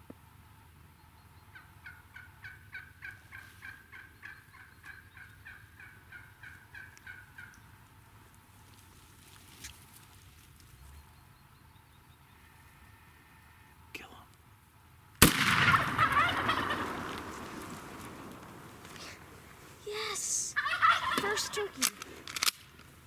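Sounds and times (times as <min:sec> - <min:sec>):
turkey calling: 0:01.4 - 0:08.0, 0:15.2 - 0:22.3.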